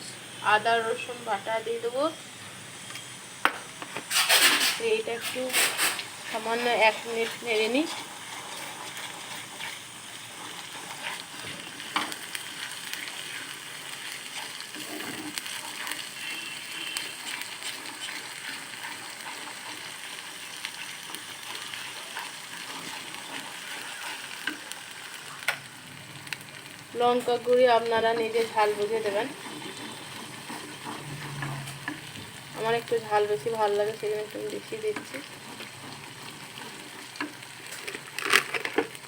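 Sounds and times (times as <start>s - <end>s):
onions sizzling in hot oil: 0.0s - 39.0s.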